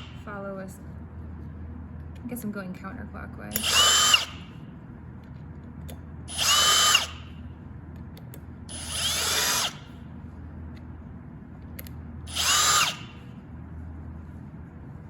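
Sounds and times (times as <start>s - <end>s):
cordless drill motor whine: 3.5s - 4.6s, 6.3s - 7.4s, 8.7s - 10.0s, 12.3s - 13.3s.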